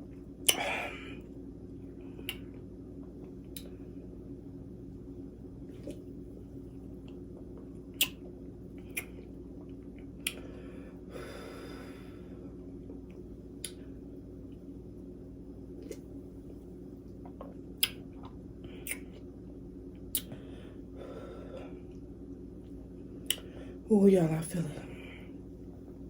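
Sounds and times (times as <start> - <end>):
low hum: 0.0 - 26.0
person gulping from bottle: 17.1 - 19.3.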